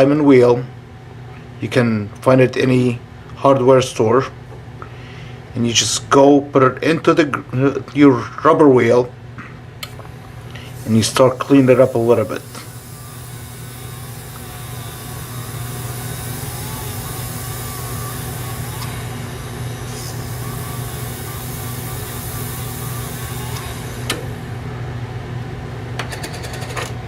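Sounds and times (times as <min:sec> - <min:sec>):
machine motor humming: 0:09.8 - 0:25.6
wavering tone of dresser on wheel: 0:09.9 - 0:24.6.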